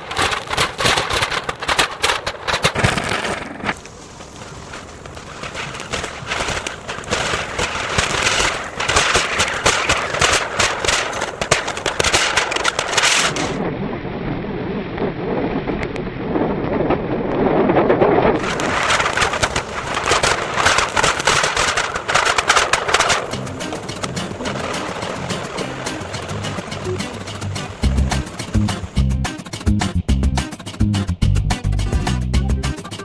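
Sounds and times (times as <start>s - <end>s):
fireworks crackling hiss: 0.0s - 13.6s, 18.4s - 29.8s
fireworks sharp pops: 0.0s - 13.6s, 18.4s - 29.9s.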